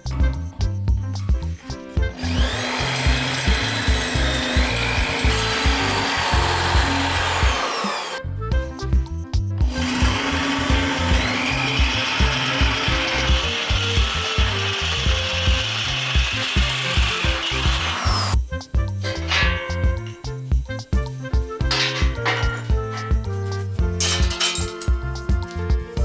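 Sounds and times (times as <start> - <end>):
background music with beat: 0.0 - 26.0
power tool whining: 2.0 - 8.2, 9.7 - 18.4, 21.7 - 23.2.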